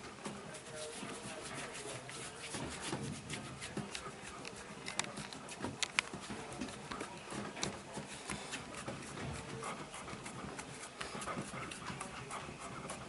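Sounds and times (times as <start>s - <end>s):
skin and cloth rubbing: 0.0s - 13.0s.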